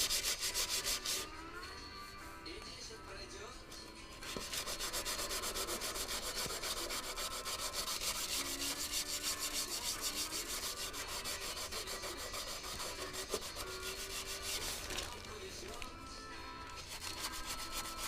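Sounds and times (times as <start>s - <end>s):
sandpaper rubbing on car panel: 0.0s - 1.3s, 4.2s - 15.0s, 16.9s - 18.0s.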